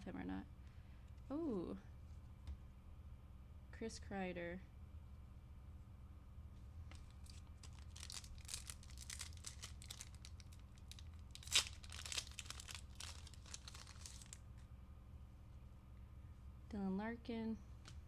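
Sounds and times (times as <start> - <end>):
wrapper tearing and crinkling: 6.9 - 14.4.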